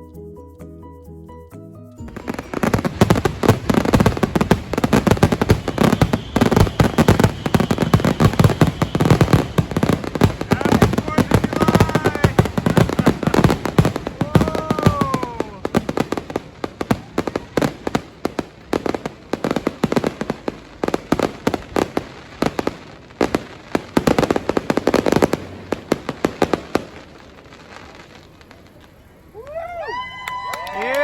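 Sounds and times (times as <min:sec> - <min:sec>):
firework falling whistle: 0:02.1 - 0:15.6
fireworks crackling bangs: 0:02.1 - 0:29.3.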